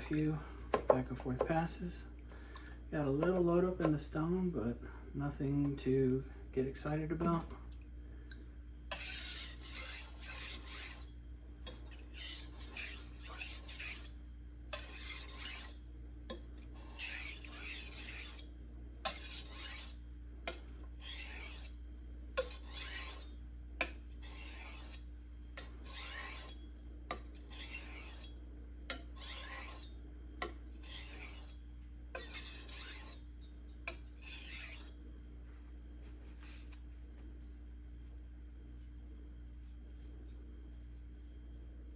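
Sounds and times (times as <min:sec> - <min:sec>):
knife scraping on whetstone: 0:08.9 - 0:21.8, 0:22.4 - 0:35.0.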